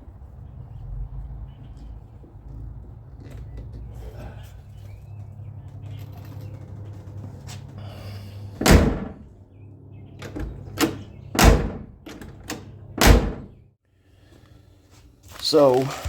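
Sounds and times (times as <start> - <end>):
car door slamming: 8.6 - 9.2, 10.4 - 12.0, 13.0 - 13.6.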